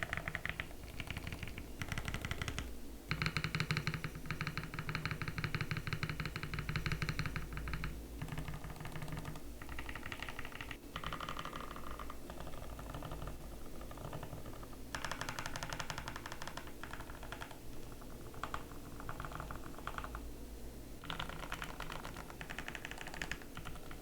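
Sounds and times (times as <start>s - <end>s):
mechanical keyboard typing: 0.0s - 20.2s, 21.0s - 24.0s.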